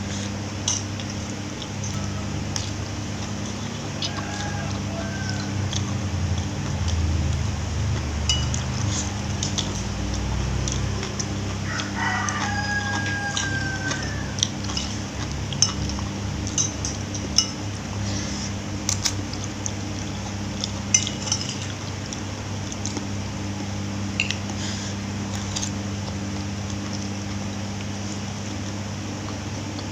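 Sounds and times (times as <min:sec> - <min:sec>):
low hum: 0:00.0 - 0:29.9
cutlery clinking against a plate: 0:08.3 - 0:09.8, 0:11.8 - 0:17.6, 0:20.9 - 0:21.8.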